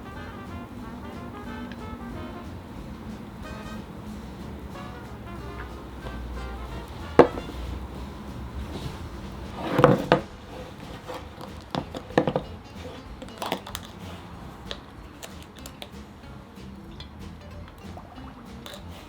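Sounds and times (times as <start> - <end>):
background music: 0.0 - 19.0
kitchenware knocking and clinking: 2.9 - 8.0, 8.6 - 14.0.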